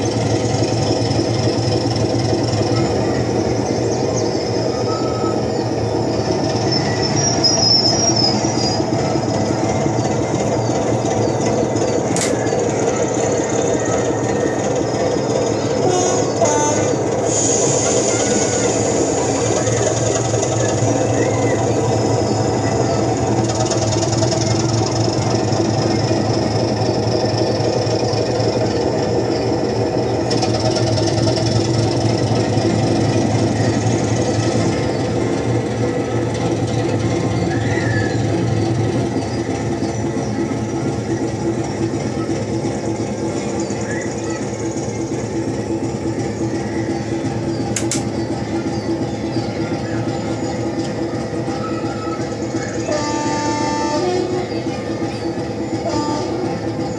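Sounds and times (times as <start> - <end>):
high wheel squeal: 0.0 - 56.9
locomotive and rolling wagons: 0.0 - 56.9
sharp click: 12.1 - 12.5, 47.7 - 48.1.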